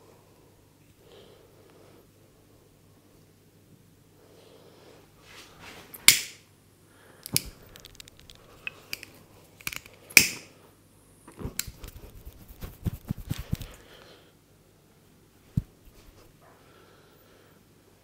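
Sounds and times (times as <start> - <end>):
light slaps and snaps: 6.0 - 6.4, 7.2 - 10.5.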